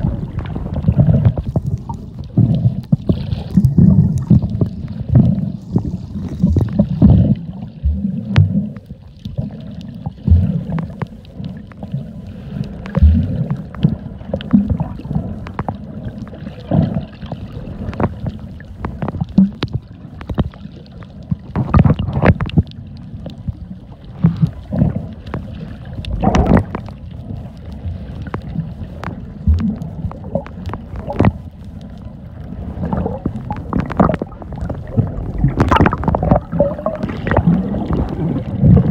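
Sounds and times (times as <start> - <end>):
low rumbles: 0.0 - 8.1, 28.1 - 38.9
muffled water sloshing and gurgling: 0.0 - 38.9.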